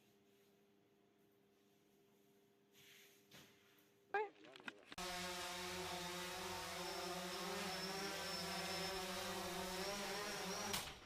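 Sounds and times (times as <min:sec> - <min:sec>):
mechanical buzzing drone: 0:05.0 - 0:11.0.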